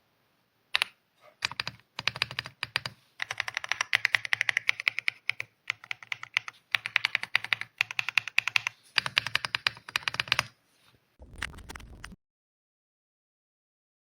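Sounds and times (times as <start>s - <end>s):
mechanical keyboard typing: 0.8s - 10.5s, 11.2s - 12.2s
brief low rumble: 11.2s - 12.2s.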